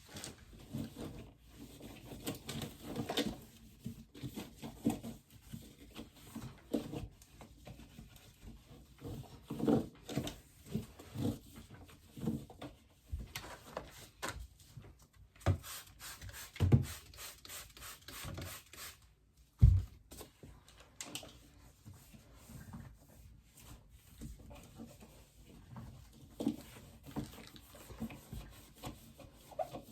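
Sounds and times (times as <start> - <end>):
objects knocking and scraping: 0.0 - 15.6.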